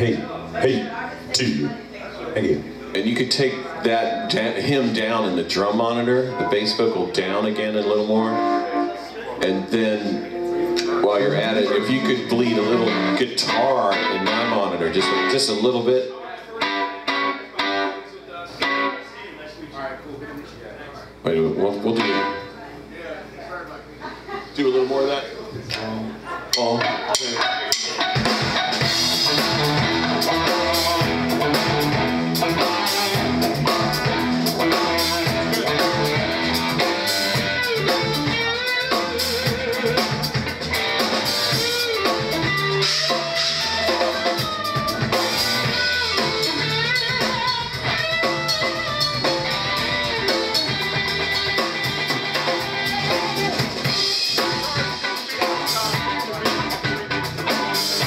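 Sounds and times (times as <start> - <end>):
guitar: 0.0 - 58.0
drum kit: 26.5 - 58.0.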